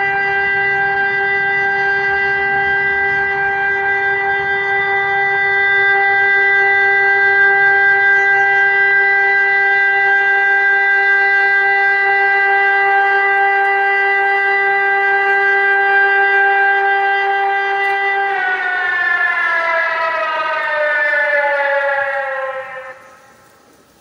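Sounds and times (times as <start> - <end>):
electronic siren steady tone: 0.0 - 24.0.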